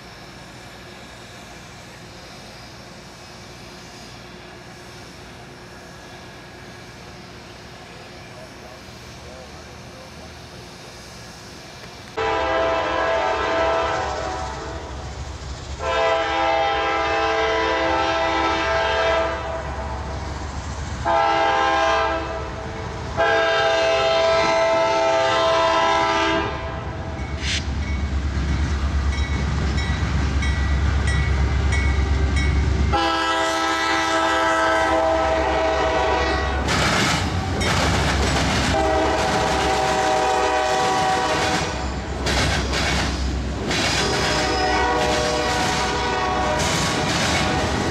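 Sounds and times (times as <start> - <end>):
deep locomotive rumble: 0.0 - 47.9
locomotive air horn blasts: 12.2 - 15.0, 15.8 - 19.8, 21.0 - 27.6, 32.9 - 36.7, 38.7 - 41.8, 44.0 - 47.8
wheels clattering over rails: 42.2 - 46.0.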